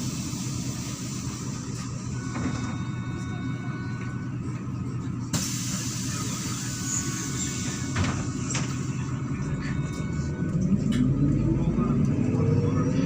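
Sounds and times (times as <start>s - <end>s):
bus engine humming: 0.0s - 13.0s
pneumatic air hiss: 5.4s - 7.9s.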